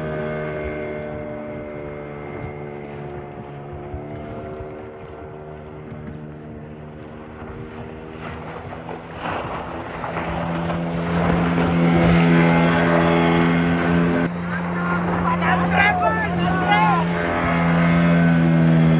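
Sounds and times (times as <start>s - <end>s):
engine running steadily: 0.0s - 18.9s.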